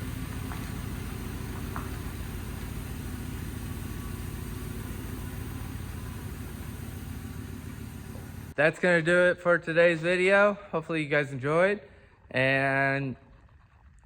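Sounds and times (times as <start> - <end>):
truck engine running: 0.0 - 8.6.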